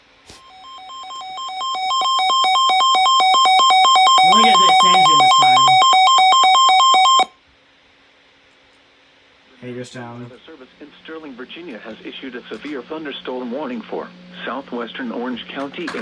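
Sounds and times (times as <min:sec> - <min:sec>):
alternating alert tone: 0:00.5 - 0:07.3.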